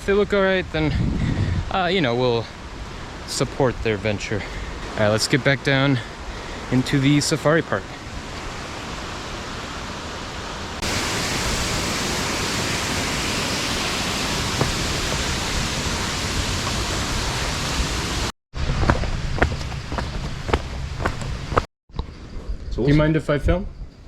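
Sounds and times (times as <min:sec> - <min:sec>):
waterfall roaring: 0:07.9 - 0:18.3, 0:20.4 - 0:21.7.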